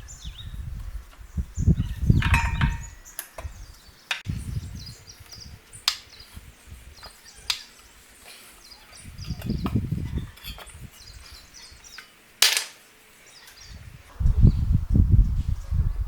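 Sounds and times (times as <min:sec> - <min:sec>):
wind rumble on microphone: 0:00.0 - 0:07.6, 0:08.9 - 0:11.9, 0:13.6 - 0:16.0
bird chirps: 0:01.3 - 0:12.1.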